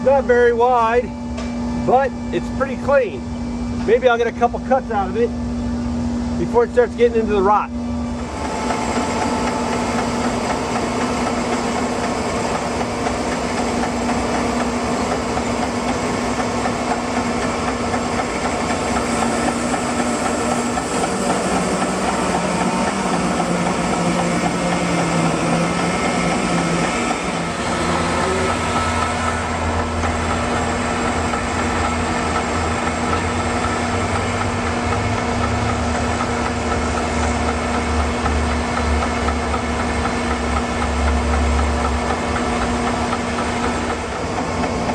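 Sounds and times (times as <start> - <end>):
sawmill engine running: 1.8 - 44.9
deeper hum: 7.6 - 34.4.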